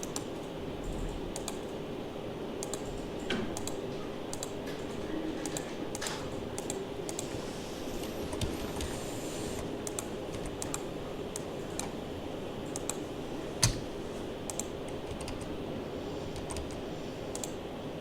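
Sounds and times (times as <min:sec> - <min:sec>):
computer keyboard keystrokes: 0:00.0 - 0:00.5, 0:01.3 - 0:01.8, 0:02.6 - 0:07.3, 0:09.8 - 0:12.0, 0:12.7 - 0:13.0, 0:14.5 - 0:15.5, 0:16.3 - 0:17.6.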